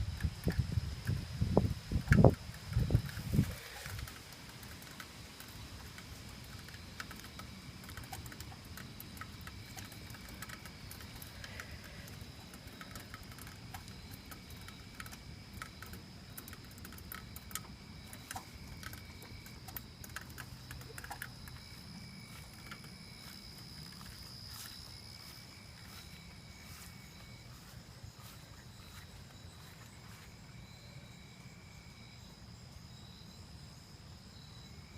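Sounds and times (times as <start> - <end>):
raindrops pattering: 0.0 - 26.9
steady high-pitched tone: 17.4 - 31.4.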